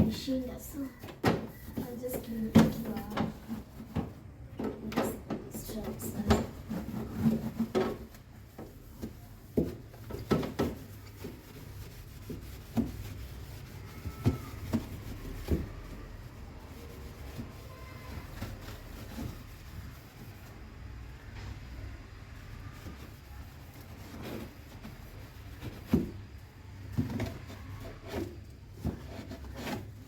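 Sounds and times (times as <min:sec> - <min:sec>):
fridge parts knocking and clicking: 0:01.0 - 0:11.4
scrubbing: 0:05.0 - 0:20.8.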